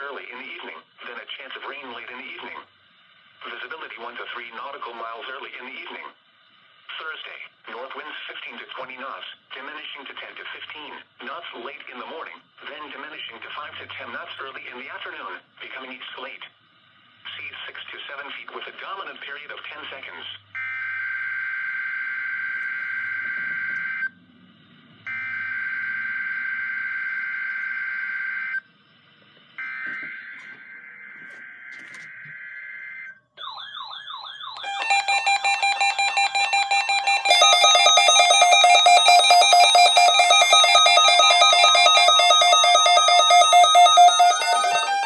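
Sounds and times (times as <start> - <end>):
electronic alarm warbling and beeping: 34.6 - 45.0
buzzy data tone bursts: 34.7 - 45.0.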